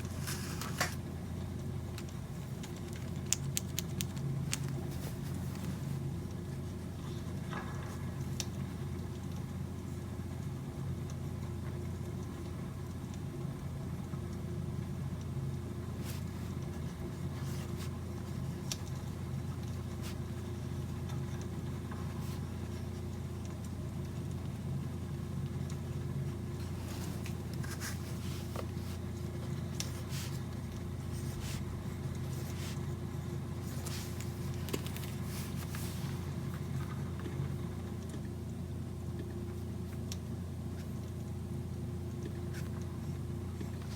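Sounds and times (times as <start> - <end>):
light clicks and taps: 1.9 - 10.5.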